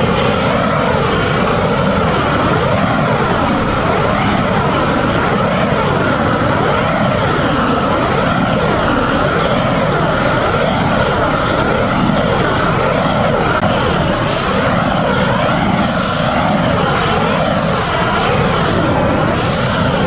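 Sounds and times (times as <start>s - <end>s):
motor-driven machine whining: 2.6s - 20.0s.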